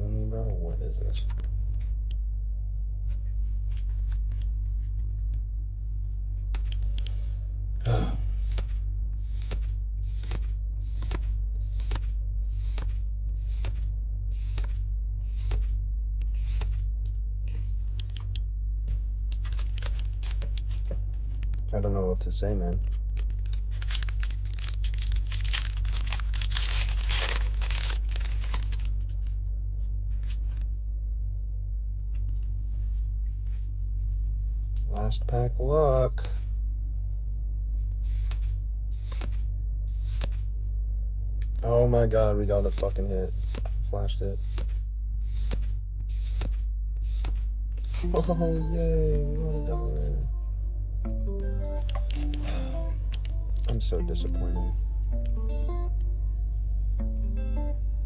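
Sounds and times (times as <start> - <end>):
steady low hum: 0.0 - 58.0
cards swishing: 8.4 - 16.9, 40.0 - 40.4, 44.4 - 47.4, 53.6 - 56.0
trading cards clicking and rustling: 8.4 - 16.9, 19.2 - 21.7, 22.8 - 29.3, 53.5 - 56.1
foil wrapper crinkling and tearing: 19.3 - 21.6, 23.1 - 29.3, 53.5 - 56.0.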